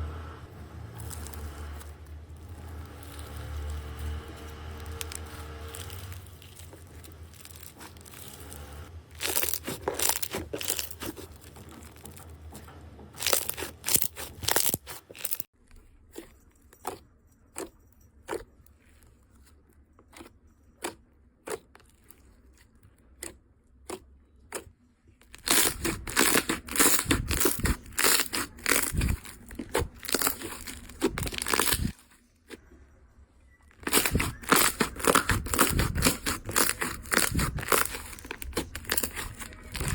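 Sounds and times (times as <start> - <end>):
slime crackling when squeezed: 1.0 - 12.2, 13.2 - 15.5, 25.3 - 32.0, 33.8 - 39.9.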